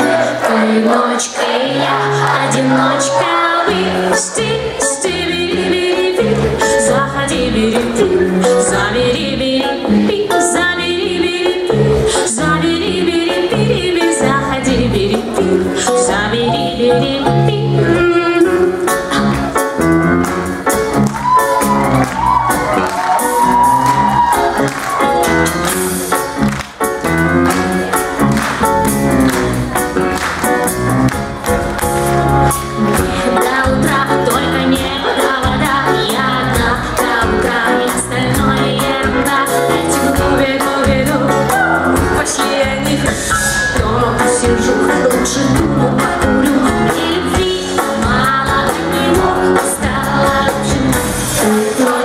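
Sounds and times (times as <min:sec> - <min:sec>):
live band playing pop: 0:00.0 - 0:52.0
drums keeping a steady beat: 0:18.8 - 0:52.0.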